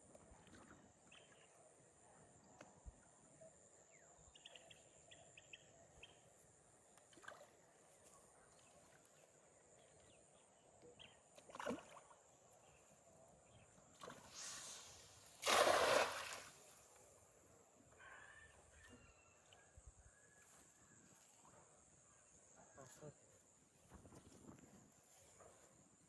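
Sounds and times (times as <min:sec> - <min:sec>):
faint outdoor background: 0:00.0 - 0:26.0
water splashing: 0:14.0 - 0:16.8
water sloshing: 0:15.4 - 0:16.8.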